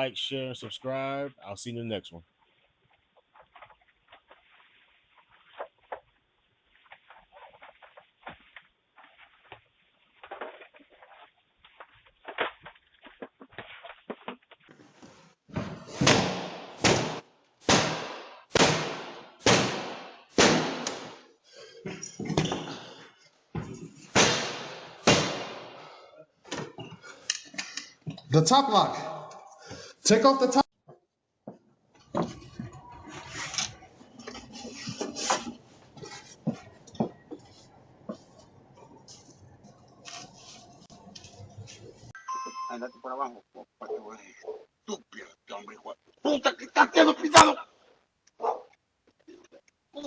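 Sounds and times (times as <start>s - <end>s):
rustling: 2.4s - 15.9s.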